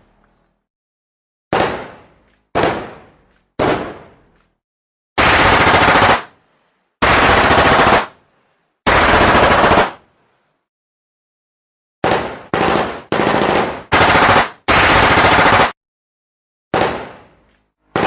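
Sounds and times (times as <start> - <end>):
single gunshots: 2.6 - 4.1
automatic gunfire bursts: 5.2 - 6.3, 7.0 - 8.1, 8.9 - 10.0, 12.0 - 15.8.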